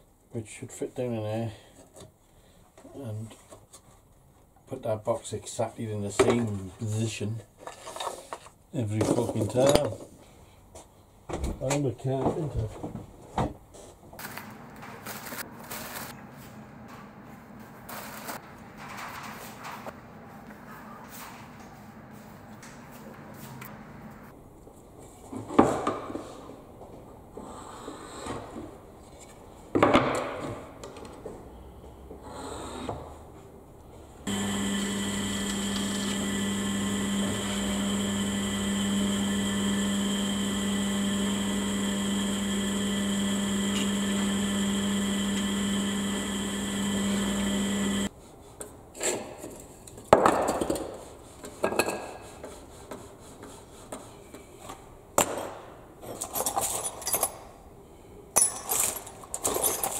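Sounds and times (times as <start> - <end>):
power tool motor running: 34.2 - 48.1.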